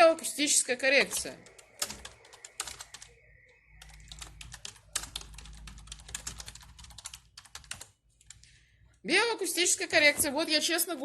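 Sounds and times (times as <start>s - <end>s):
low hum: 1.2s - 7.0s
keyboard typing clicks: 3.8s - 8.4s.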